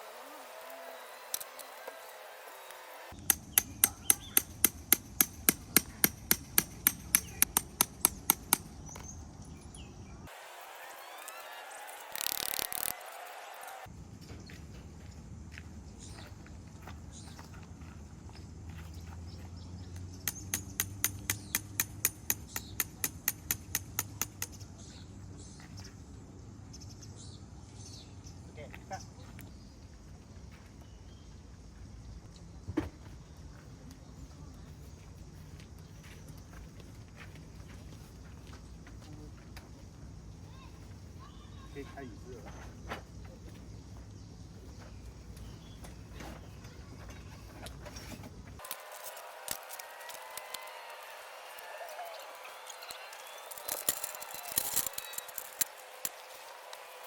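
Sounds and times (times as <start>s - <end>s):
hammer striking quickly: 3.2s - 8.7s, 20.3s - 24.6s.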